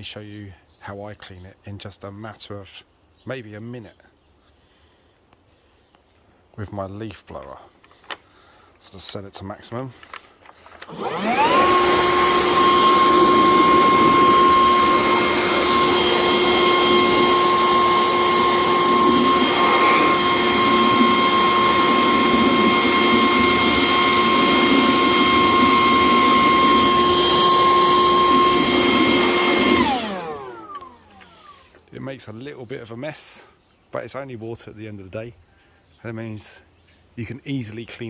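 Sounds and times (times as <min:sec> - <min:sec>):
leaf blower whining: 0:09.9 - 0:32.1.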